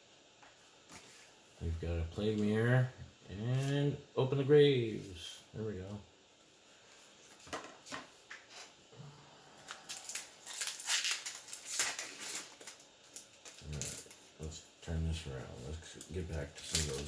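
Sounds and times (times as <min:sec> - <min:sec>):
cards rustling and snapping: 0:09.6 - 0:14.2, 0:16.0 - 0:17.0.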